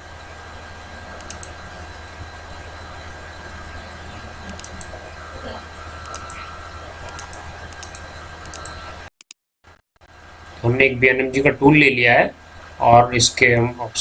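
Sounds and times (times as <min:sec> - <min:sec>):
lathe humming: 0:00.0 - 0:09.1
light clicks: 0:01.2 - 0:01.6, 0:04.5 - 0:05.0, 0:06.0 - 0:06.4, 0:07.0 - 0:08.8.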